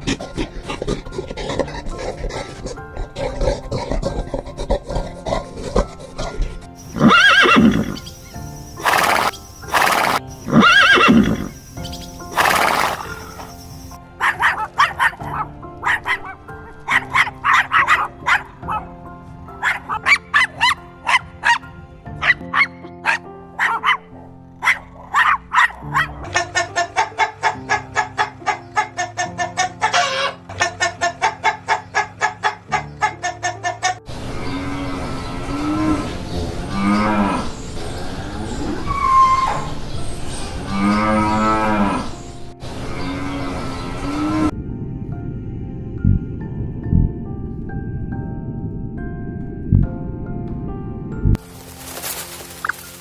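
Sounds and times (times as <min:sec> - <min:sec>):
horse neighing: 0:00.0 - 0:15.3
background music: 0:00.0 - 0:53.0.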